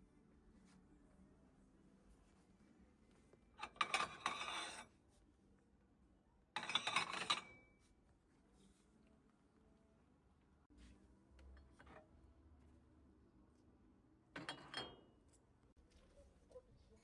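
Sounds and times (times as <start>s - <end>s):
rustling scraping handling noise: 3.7s - 5.3s.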